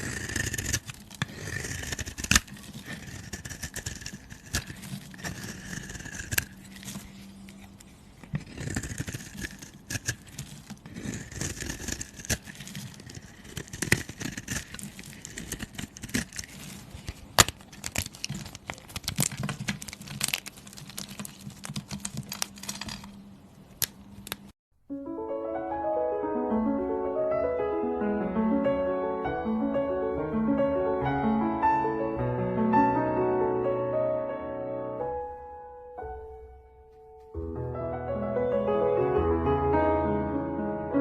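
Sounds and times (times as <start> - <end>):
material crackling and clicking: 0.0 - 24.6.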